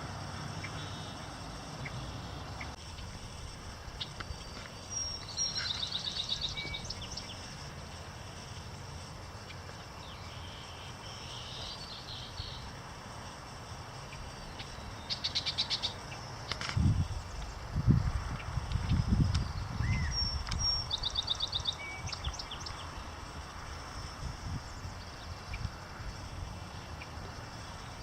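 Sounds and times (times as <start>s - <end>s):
low outdoor rumble: 0.0s - 11.0s
songbirds singing: 0.0s - 13.4s, 14.0s - 28.0s.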